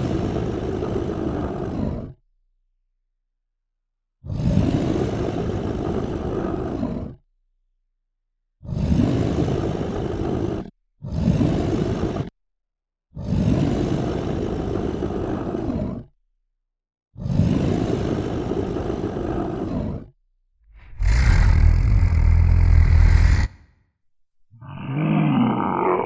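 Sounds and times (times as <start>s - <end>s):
deep rumble: 20.6s - 23.7s
monster roars: 20.7s - 23.7s, 24.6s - 26.0s.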